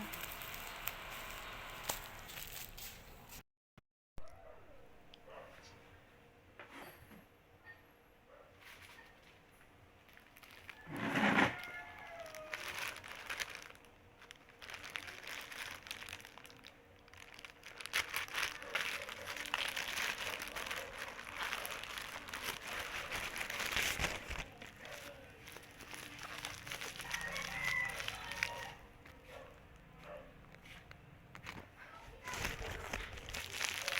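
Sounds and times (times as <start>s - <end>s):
packaging crinkling and rustling: 0.0s - 3.4s, 10.1s - 29.2s, 31.3s - 33.9s.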